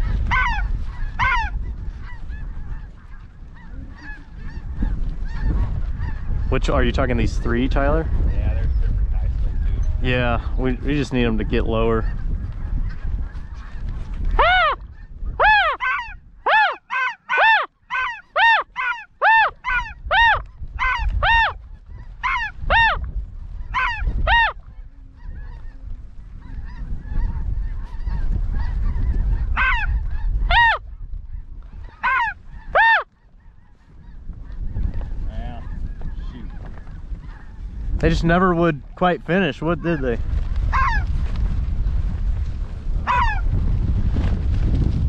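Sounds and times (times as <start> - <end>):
goose honking: 0.0 - 6.3, 14.4 - 14.8, 15.4 - 21.6, 23.6 - 24.6, 26.4 - 30.8, 31.8 - 33.1, 43.1 - 43.4
wind on microphone: 0.0 - 45.0.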